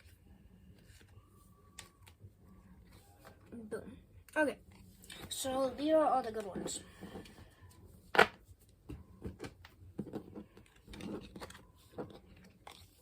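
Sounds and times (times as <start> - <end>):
cards rustling: 9.4 - 13.0.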